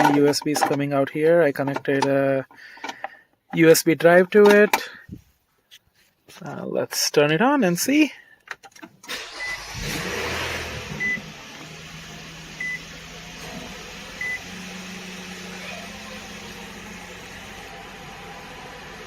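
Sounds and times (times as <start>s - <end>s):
car warning chime beeping: 9.3s - 9.7s, 11.0s - 11.3s, 12.6s - 12.9s, 14.2s - 14.5s.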